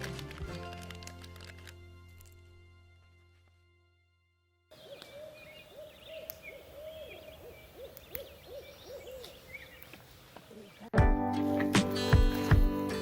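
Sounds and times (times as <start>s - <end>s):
background music: 0.0s - 4.3s, 11.0s - 13.0s
owls hooting: 4.8s - 9.7s.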